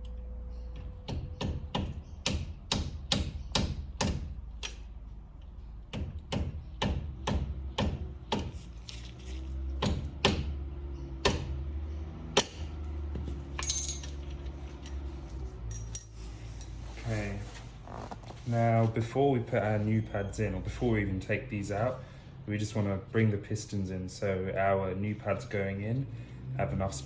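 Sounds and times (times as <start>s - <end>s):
metallic jingle: 13.6s - 15.0s, 15.7s - 16.8s.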